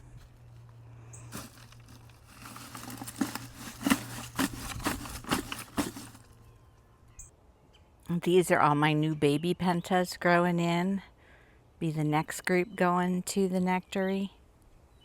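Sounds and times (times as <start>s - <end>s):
rustling and crinkling: 0.0s - 6.6s.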